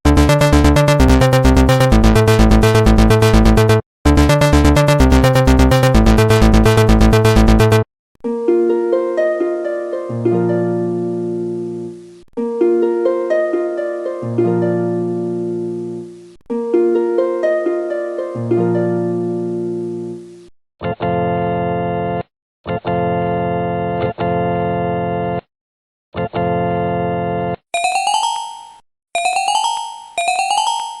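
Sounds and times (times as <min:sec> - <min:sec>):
loud electronic music: 0:00.1 - 0:07.9
harp jingle: 0:27.8 - 0:31.0.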